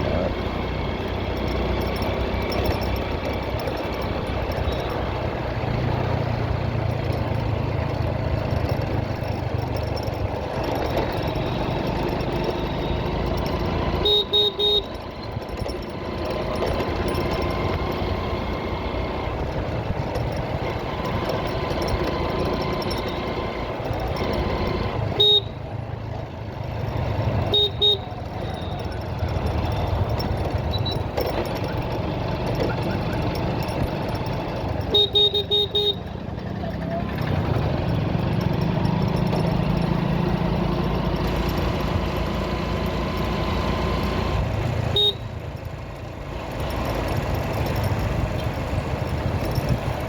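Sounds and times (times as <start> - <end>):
motorcycle engine running: 0.0 - 50.0
road noise: 0.0 - 50.0
short horn beeps: 13.9 - 15.1, 25.1 - 25.6, 27.4 - 28.9, 34.9 - 36.2, 44.9 - 45.4.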